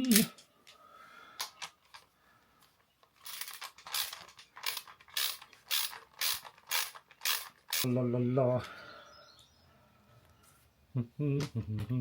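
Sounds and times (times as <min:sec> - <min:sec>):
ratchet wrench ratcheting: 0:03.2 - 0:07.9.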